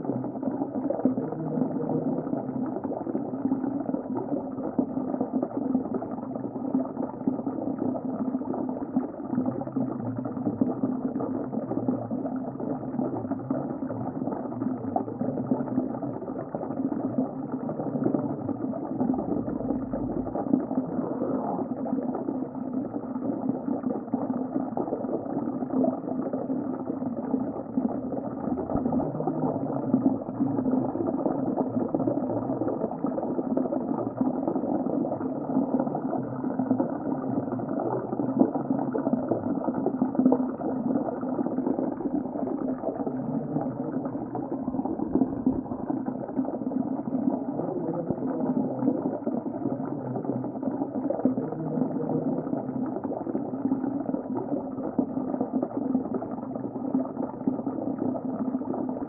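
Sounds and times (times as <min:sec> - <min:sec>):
underwater bubbling and rumbling: 0:00.0 - 0:59.0.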